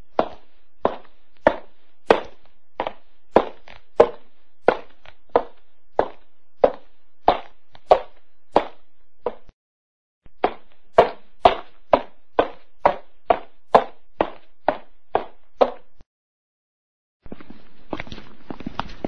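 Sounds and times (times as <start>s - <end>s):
footsteps walking: 0.0s - 9.5s, 10.3s - 16.0s, 17.2s - 19.0s
footsteps running: 0.2s - 9.5s, 10.3s - 15.8s.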